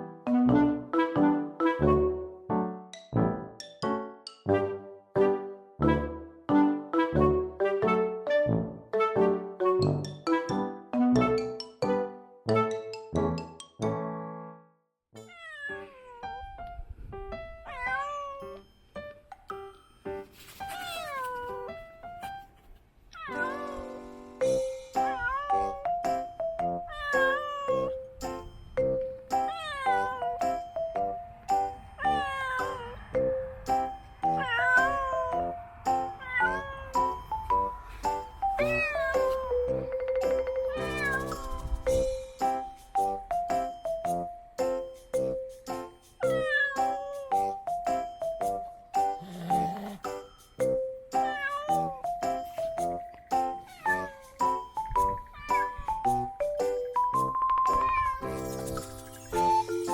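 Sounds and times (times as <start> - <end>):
plucked background music: 0.0 - 14.5, 23.2 - 32.6, 33.2 - 59.9
cat meowing: 15.2 - 16.6, 17.6 - 18.7, 20.6 - 21.9, 23.1 - 24.0, 25.0 - 26.2, 26.8 - 28.1, 29.4 - 30.6, 32.0 - 33.1, 34.2 - 35.6, 36.2 - 37.3, 38.6 - 39.5, 40.7 - 41.6, 46.2 - 47.5, 51.2 - 52.1, 53.6 - 56.0, 57.7 - 58.3.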